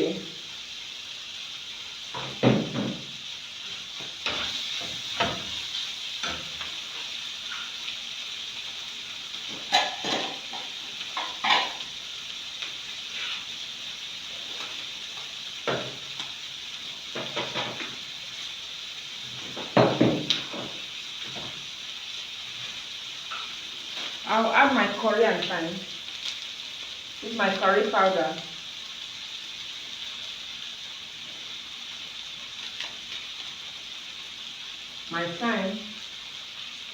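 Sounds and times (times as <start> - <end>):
chicken and onions sizzling in oil: 0.0 - 36.9.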